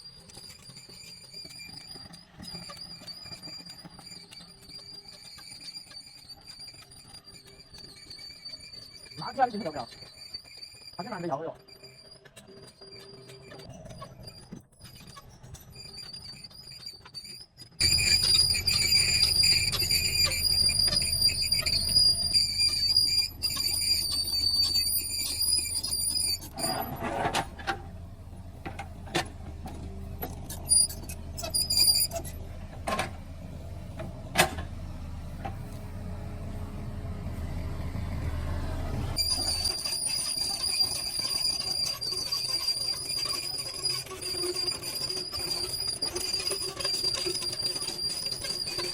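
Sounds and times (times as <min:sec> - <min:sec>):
high-pitched metallic squeal: 0:00.0 - 0:48.9
excavator engine rumble: 0:17.8 - 0:48.9.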